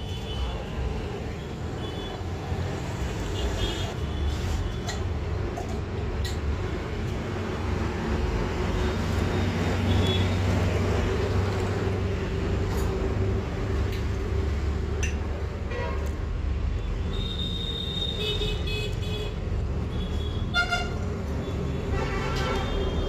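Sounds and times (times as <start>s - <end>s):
road traffic rumble: 0.0s - 23.0s
vehicle horns honking: 17.1s - 21.0s, 21.7s - 23.0s.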